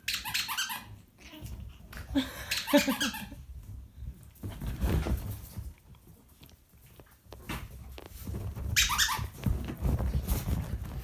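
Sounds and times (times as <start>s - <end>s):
squeaky dog toy squeak: 0.0s - 1.0s, 2.5s - 3.4s, 8.8s - 9.3s
dog playing thumps and scuffling: 3.4s - 11.0s.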